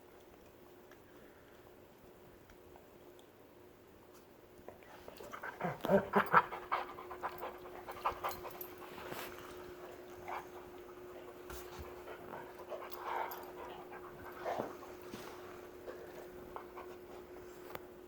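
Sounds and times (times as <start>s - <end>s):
faint steady hum: 0.0s - 18.0s
dog panting: 5.4s - 17.4s.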